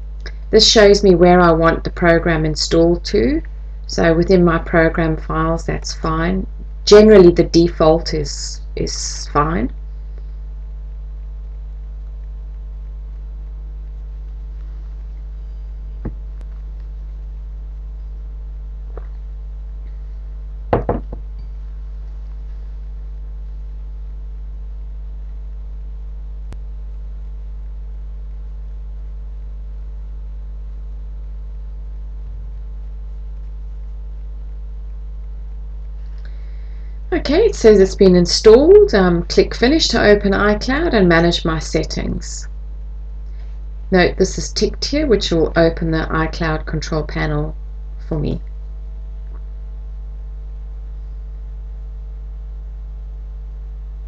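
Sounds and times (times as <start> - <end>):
steady low hum: 0.0 - 54.0
clicks and knocks: 20.8 - 21.3.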